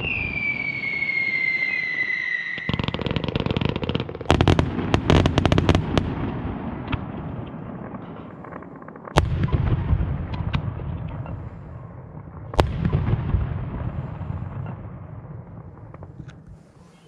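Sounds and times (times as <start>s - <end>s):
fireworks crackling pops: 14.1s - 17.0s.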